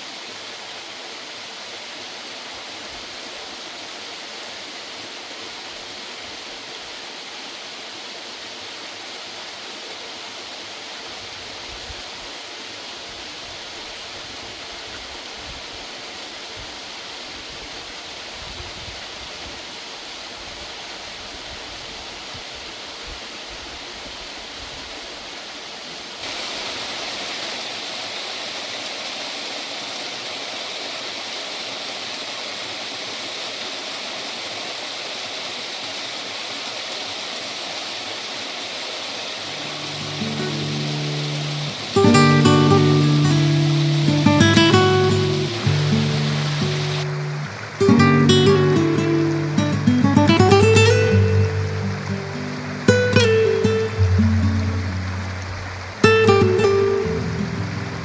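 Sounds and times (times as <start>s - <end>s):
waterfall rushing: 26.2s - 33.9s, 34.8s - 58.0s.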